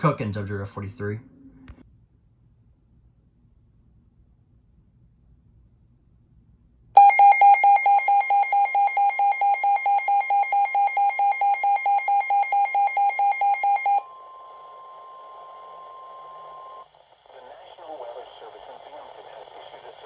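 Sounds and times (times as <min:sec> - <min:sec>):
rapid alarm beeping: 0:07.0 - 0:16.9
steady radio alarm tone: 0:07.0 - 0:20.0
radio hiss: 0:15.2 - 0:20.0.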